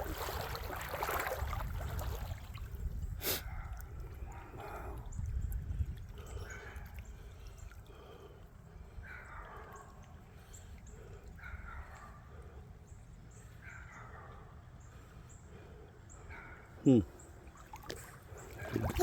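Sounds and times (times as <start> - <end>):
wind rumble on microphone: 0.0 - 7.7.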